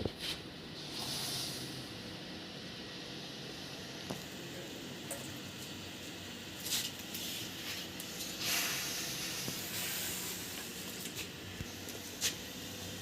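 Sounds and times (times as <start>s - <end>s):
food hissing on a stove: 0.2s - 2.4s, 6.6s - 13.0s.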